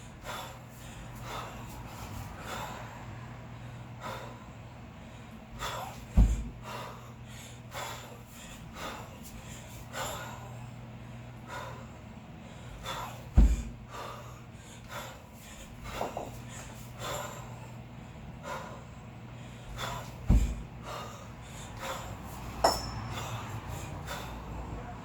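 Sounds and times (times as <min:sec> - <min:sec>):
hard rhythmic breathing: 0:00.0 - 0:25.0
kettlebell heavy thuds: 0:05.8 - 0:06.7, 0:13.0 - 0:13.9, 0:15.8 - 0:16.4, 0:19.8 - 0:24.4.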